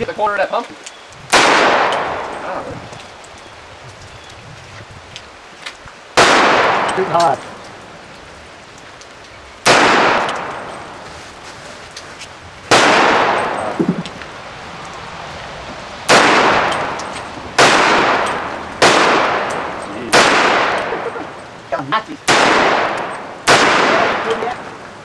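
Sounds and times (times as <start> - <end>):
echoing gunshots: 1.3 - 2.4, 6.2 - 7.4, 9.6 - 11.0, 12.7 - 14.2, 16.0 - 21.4, 22.2 - 24.8.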